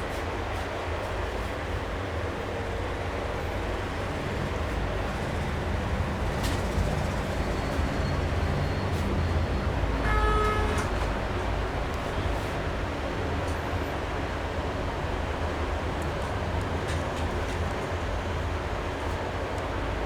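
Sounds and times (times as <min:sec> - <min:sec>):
traffic rumble: 0:02.5 - 0:20.0
vehicle horn: 0:09.5 - 0:11.2.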